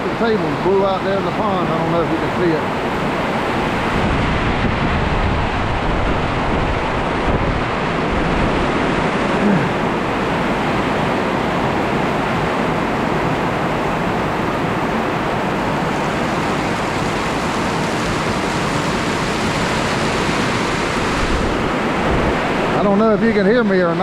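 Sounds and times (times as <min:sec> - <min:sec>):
heavy wind-driven rain: 0:00.0 - 0:24.0.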